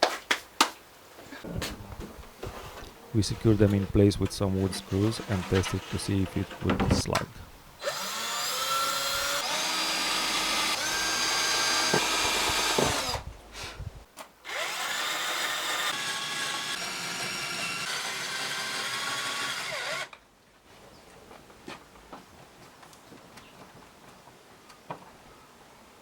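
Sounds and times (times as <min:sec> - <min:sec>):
power drill driving screws into wood: 0:07.8 - 0:13.3, 0:14.5 - 0:20.2.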